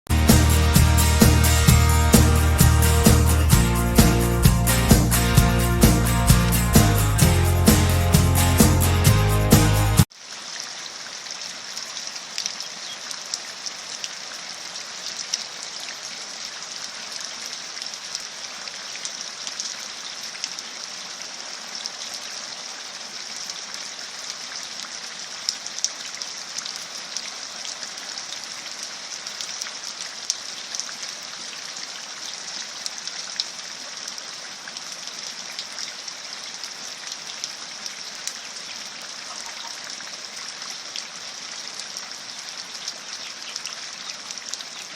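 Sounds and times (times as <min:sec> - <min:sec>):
steady rain hiss: 0:10.0 - 0:44.9
raindrops striking a surface: 0:10.1 - 0:14.2, 0:31.7 - 0:44.9.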